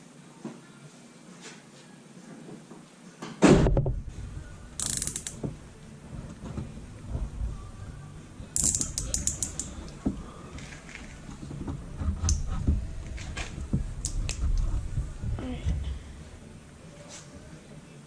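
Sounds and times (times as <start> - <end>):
hand tools clicking and rattling: 4.8 - 5.5, 8.6 - 10.0.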